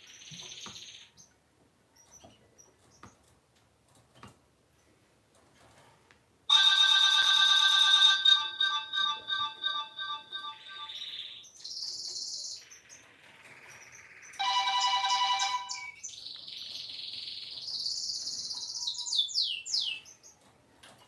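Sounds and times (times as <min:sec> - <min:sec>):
chirping electronic ringtone: 0:06.5 - 0:11.4, 0:14.4 - 0:16.0.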